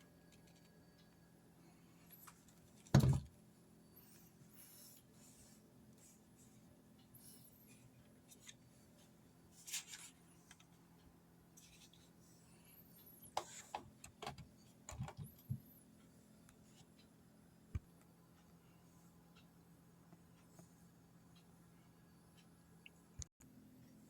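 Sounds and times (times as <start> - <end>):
faint steady hum: 0.0 - 24.0
plastic parts clicking and knocking: 13.4 - 15.6.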